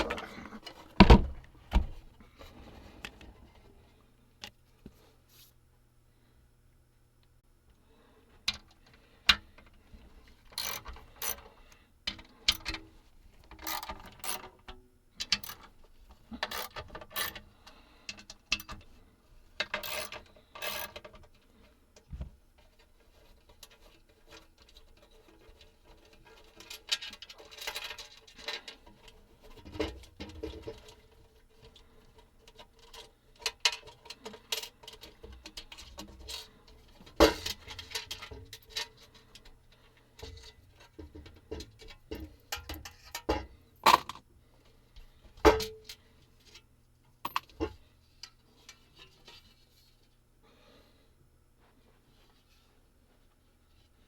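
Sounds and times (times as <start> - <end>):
ratchet clicking: 10.6 - 11.4, 16.4 - 17.4, 19.8 - 20.9
metal tools handled on workbench: 40.2 - 44.2, 47.2 - 47.8.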